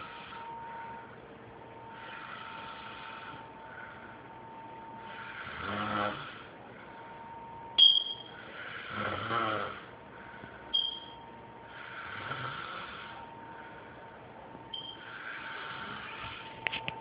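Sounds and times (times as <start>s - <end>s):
person snoring: 5.1s - 6.5s, 8.6s - 9.9s, 11.7s - 13.2s, 15.0s - 16.5s
sharp high-pitched chirp: 7.8s - 8.4s, 10.7s - 11.2s, 14.7s - 15.0s.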